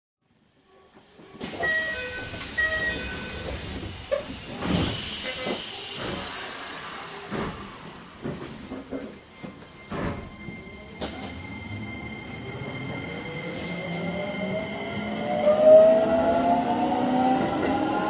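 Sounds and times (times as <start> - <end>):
air hiss: 2.2 - 8.5
train doors closing knock: 7.3 - 11.4.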